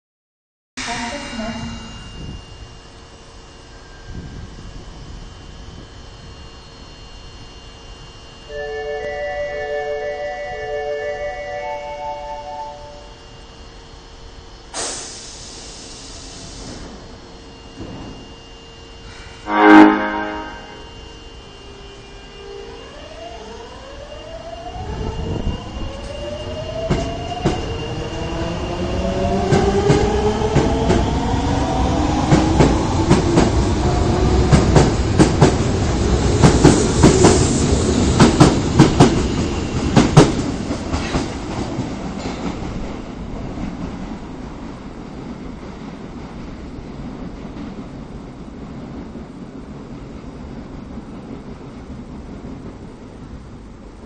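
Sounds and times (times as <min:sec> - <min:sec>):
electric train motor whine: 0:00.8 - 0:40.4.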